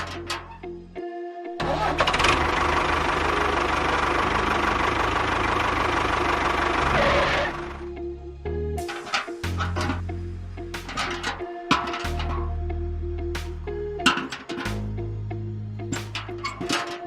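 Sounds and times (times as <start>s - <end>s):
small engine running: 1.6s - 7.9s.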